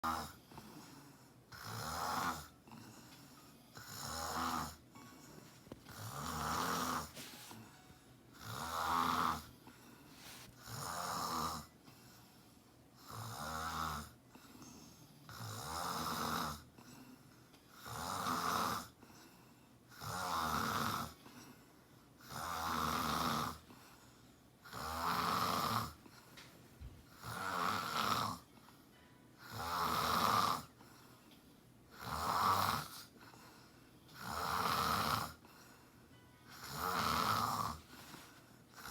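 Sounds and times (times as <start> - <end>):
woman snoring: 0.0 - 4.8, 5.9 - 7.3, 8.4 - 9.5, 10.2 - 11.8, 13.0 - 17.0, 17.7 - 19.0, 19.9 - 21.5, 22.2 - 23.7, 24.6 - 26.1, 27.1 - 28.5, 29.4 - 30.8, 31.9 - 33.3, 34.1 - 35.4, 36.5 - 37.9
quiet breathing: 0.0 - 13.3, 13.9 - 15.6, 16.2 - 20.2, 21.0 - 24.8, 25.5 - 27.4, 28.3 - 32.0, 32.8 - 34.3, 34.9 - 38.9.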